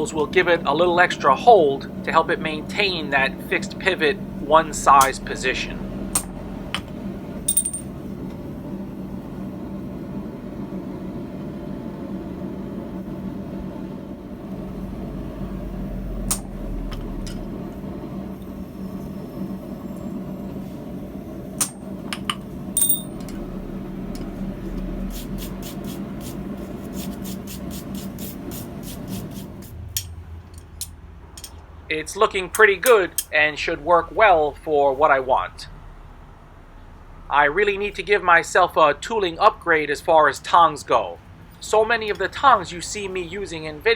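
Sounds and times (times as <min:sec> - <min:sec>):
steady hum: 0:00.0 - 0:35.6
metal tongs clinking: 0:07.5 - 0:07.9, 0:21.6 - 0:23.4, 0:30.0 - 0:31.6.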